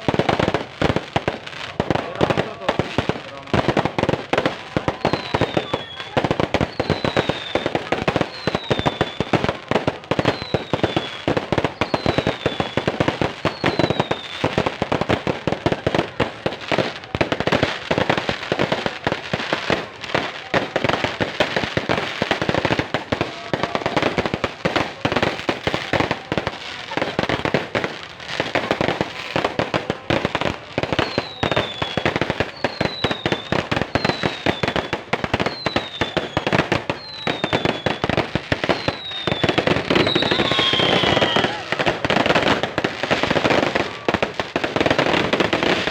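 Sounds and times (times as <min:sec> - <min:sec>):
firecrackers banging and crackling: 0:00.0 - 0:45.9
falling firework whistle: 0:04.8 - 0:09.5, 0:10.1 - 0:14.5, 0:30.9 - 0:44.2.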